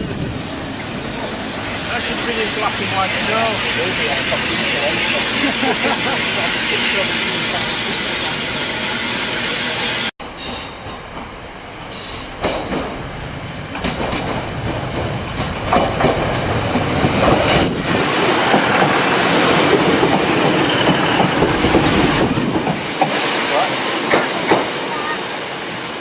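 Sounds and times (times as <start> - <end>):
train running on rails: 0.0 - 26.0
train wheel knocks: 13.7 - 17.8.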